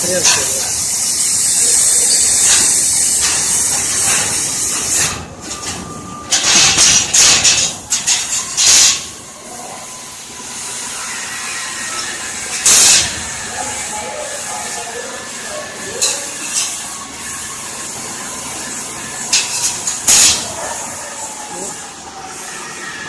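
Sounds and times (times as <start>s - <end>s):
plasma torch hissing: 0.0s - 5.6s, 6.3s - 21.8s
machine noise with thin whine: 0.0s - 23.0s.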